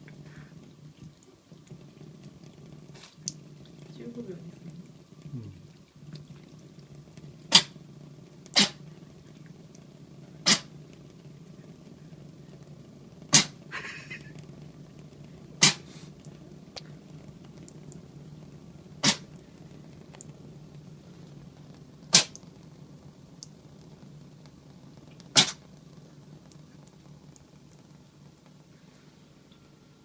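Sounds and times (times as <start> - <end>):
cat sneezing: 7.5 - 7.7, 8.6 - 8.8, 10.4 - 10.7, 13.3 - 13.9, 15.6 - 16.1, 19.0 - 19.3, 25.4 - 25.6.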